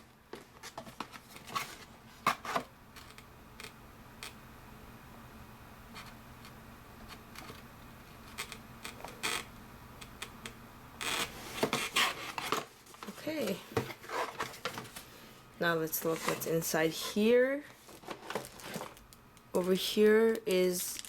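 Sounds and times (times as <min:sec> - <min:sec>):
paper rustling: 0:17.7 - 0:19.0.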